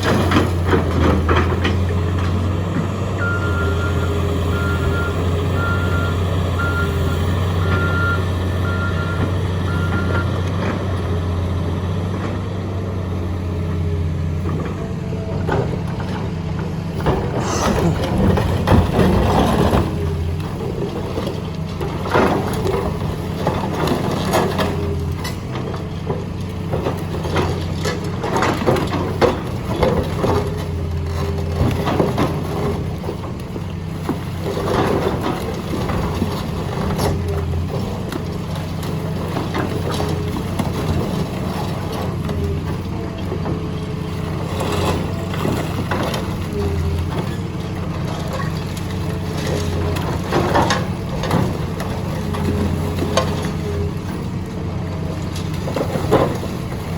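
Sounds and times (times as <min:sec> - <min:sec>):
diesel engine running: 0:00.0 - 0:56.9
concrete cracking and crunching: 0:15.5 - 0:56.9.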